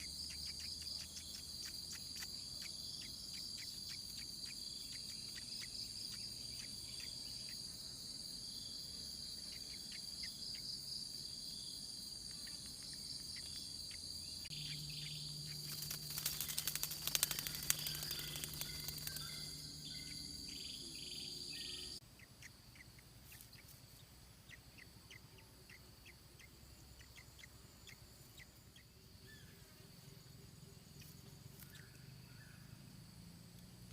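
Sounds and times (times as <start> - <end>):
insect trill: 0.0 - 33.9.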